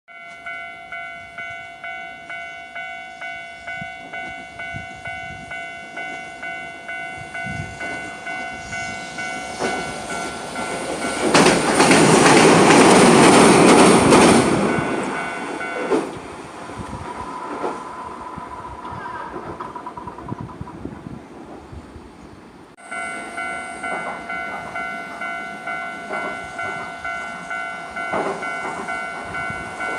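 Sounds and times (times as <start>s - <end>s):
level crossing warning bell: 0.1s - 16.2s, 22.8s - 29.9s
tram passing: 0.1s - 29.9s.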